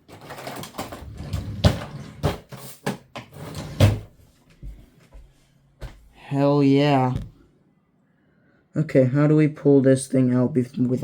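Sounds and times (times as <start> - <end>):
clicks and knocks of rummaging: 0.0 - 4.1.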